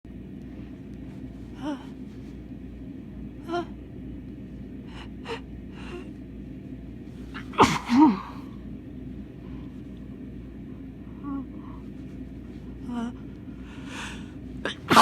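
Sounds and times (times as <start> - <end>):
person sneezing loudly: 7.4 - 8.4, 14.6 - 15.0
person gasping: 13.5 - 15.0.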